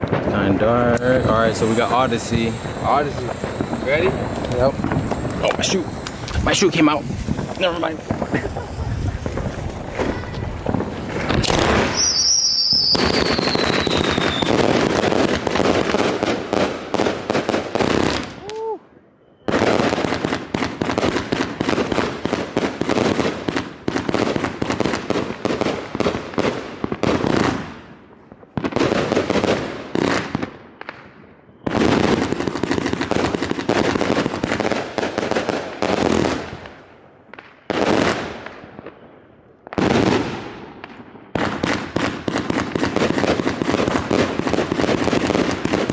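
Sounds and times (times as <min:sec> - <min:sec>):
firework cake firing shots: 0:00.0 - 0:18.7, 0:39.8 - 0:45.9
falling firework whistle: 0:00.9 - 0:15.0, 0:18.2 - 0:19.9.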